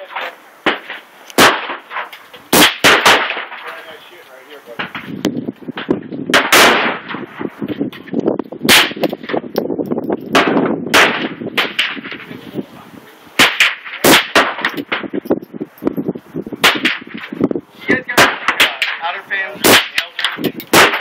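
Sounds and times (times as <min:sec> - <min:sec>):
rifle firing single shots: 0:00.6 - 0:04.0, 0:06.3 - 0:07.3, 0:10.3 - 0:12.2, 0:13.4 - 0:15.1, 0:18.1 - 0:21.0.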